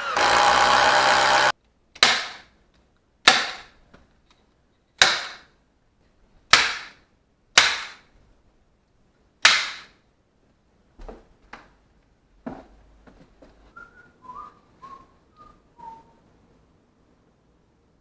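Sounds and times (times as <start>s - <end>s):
fasteners banging into wood: 3.2s - 4.0s, 4.9s - 5.5s.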